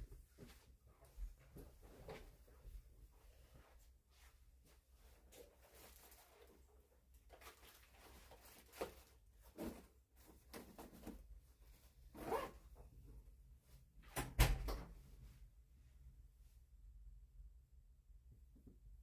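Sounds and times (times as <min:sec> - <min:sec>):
handling rustles and scrapes: 0:00.4 - 0:12.4.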